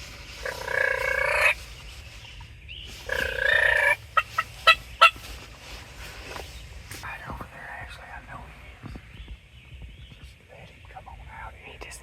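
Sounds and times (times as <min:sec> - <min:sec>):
turkey gobbling: 0:00.4 - 0:01.6, 0:03.1 - 0:05.2.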